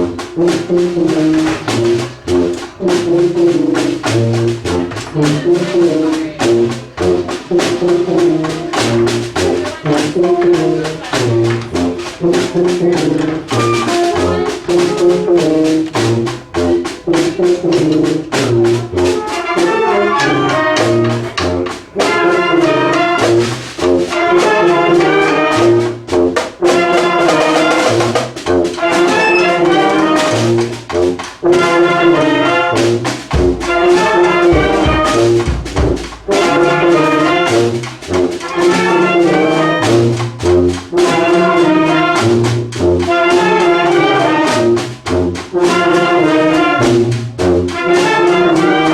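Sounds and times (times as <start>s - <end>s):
brass band playing: 0.0s - 48.9s
percussive hits: 32.8s - 38.8s
deep thumps: 33.2s - 36.6s.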